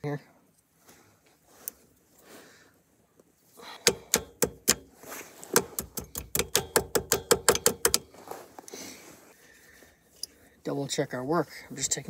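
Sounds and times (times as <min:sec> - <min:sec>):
ringing metal clicks of hand tools: 0:03.8 - 0:04.9, 0:05.6 - 0:08.1.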